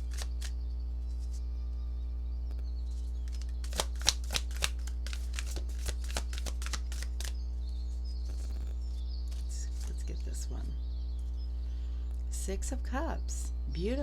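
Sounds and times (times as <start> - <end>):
cards being shuffled: 0.0 - 0.6, 2.9 - 7.4, 8.2 - 10.2
low hum: 0.0 - 14.0.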